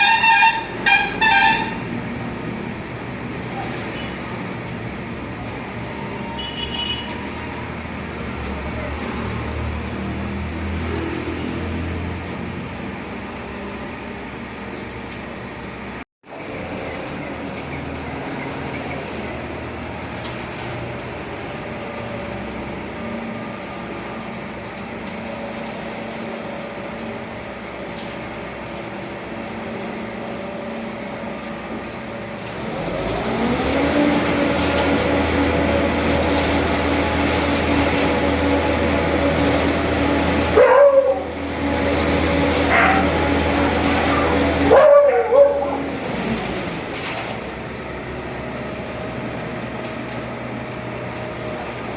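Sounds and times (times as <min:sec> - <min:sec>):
construction machine engine revving: 0:00.0 - 0:51.9.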